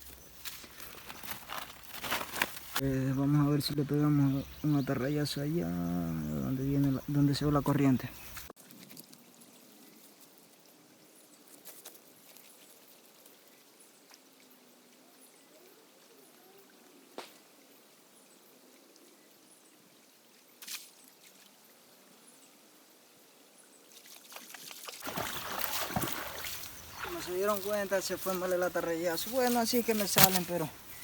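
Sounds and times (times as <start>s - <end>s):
river water trickling: 12.2s - 16.8s, 17.5s - 31.0s
net splashing into water: 24.0s - 27.8s.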